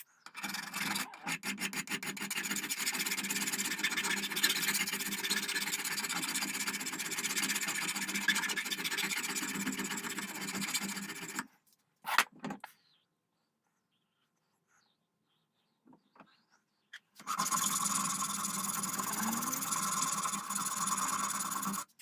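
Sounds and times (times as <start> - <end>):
abrasive tool rasping on brass: 0.4 - 11.4, 17.3 - 21.9.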